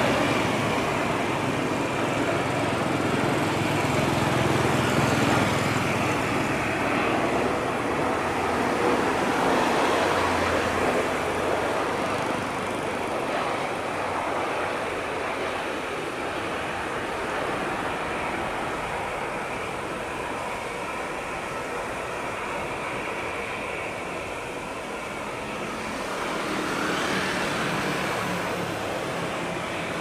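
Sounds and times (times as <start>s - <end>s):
jet engines rumbling: 0.0s - 30.0s.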